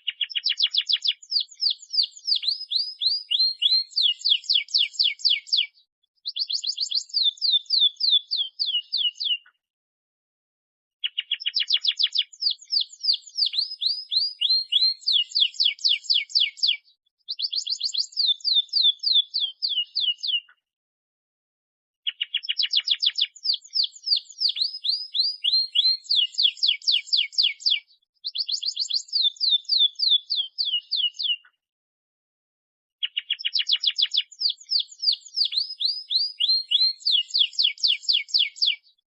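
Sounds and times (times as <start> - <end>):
canary singing trills: 0.0 - 9.5, 11.0 - 20.5, 22.0 - 31.5, 33.0 - 39.0.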